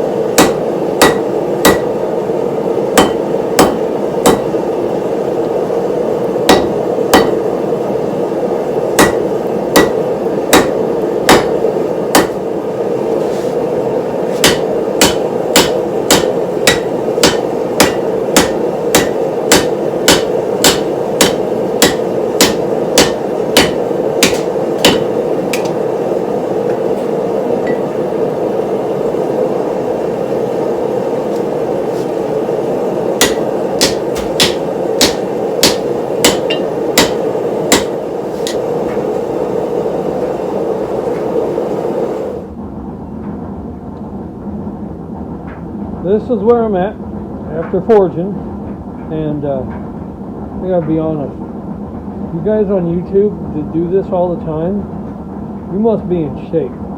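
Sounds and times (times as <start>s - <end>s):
hammer striking steel: 0.3s - 2.0s, 3.0s - 4.6s, 6.5s - 7.5s, 9.0s - 12.4s, 14.3s - 25.8s, 27.6s - 27.9s, 33.2s - 38.7s.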